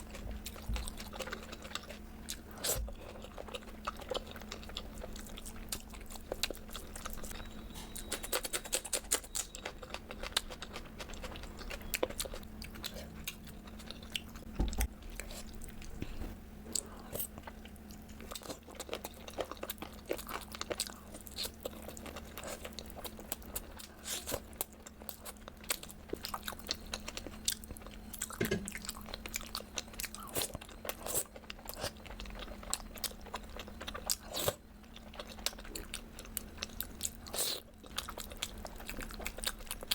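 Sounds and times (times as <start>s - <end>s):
faint steady hum: 0.0s - 39.9s
person chewing crunchy food: 0.0s - 39.9s.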